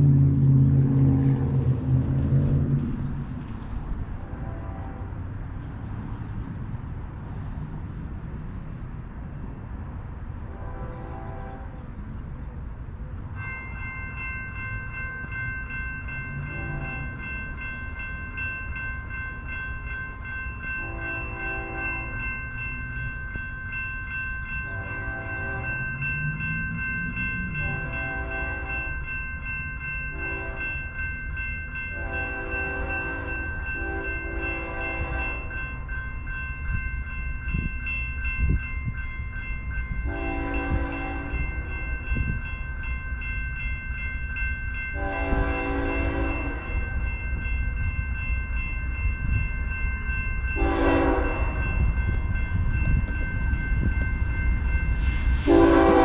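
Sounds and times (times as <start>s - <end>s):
freight train rumble: 0.0s - 56.0s
locomotive horn blasts: 4.2s - 5.3s, 10.5s - 11.8s, 16.5s - 17.2s, 20.8s - 22.2s, 24.7s - 25.9s, 27.6s - 28.9s, 30.1s - 30.8s, 32.0s - 35.6s, 40.0s - 41.4s, 45.0s - 46.8s, 50.6s - 51.8s, 55.4s - 56.0s
crossing bells ringing: 13.0s - 56.0s.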